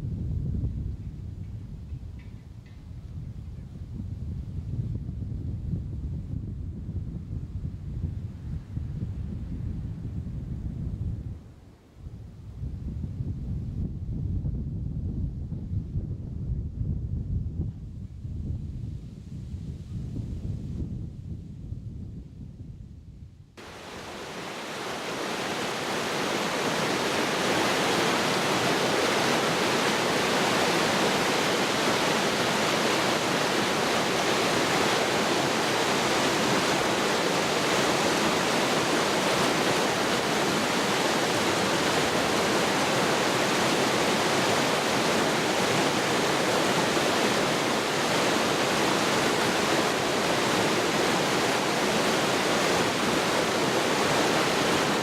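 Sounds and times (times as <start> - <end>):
mountain stream rushing: 23.6 - 55.0.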